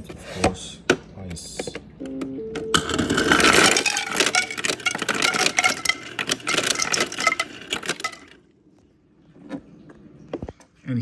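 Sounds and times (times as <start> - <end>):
ice cubes clattering into container: 2.8 - 8.4.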